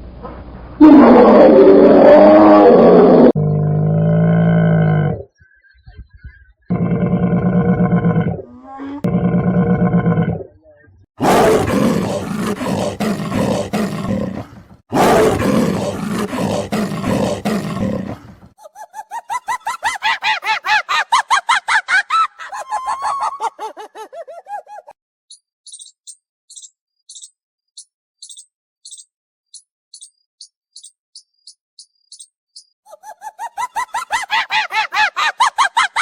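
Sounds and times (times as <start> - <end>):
long rough animal roars: 0.8 - 5.3, 6.7 - 10.6, 11.2 - 18.4
fast chirping calls: 25.3 - 32.8.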